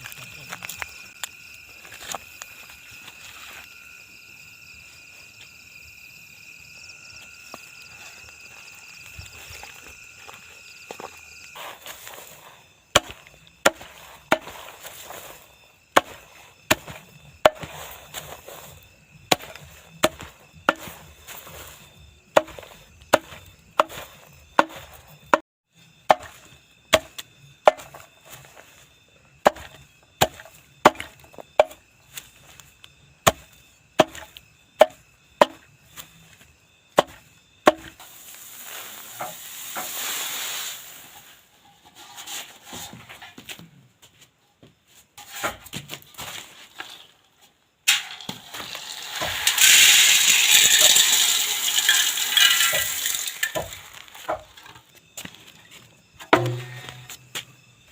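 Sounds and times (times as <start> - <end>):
blade chopping into wood: 13.0 - 14.6, 16.0 - 18.3, 19.3 - 21.0, 24.6 - 25.4, 26.1 - 28.0, 29.4 - 31.8, 33.3 - 35.6, 37.0 - 38.0, 56.3 - 57.3.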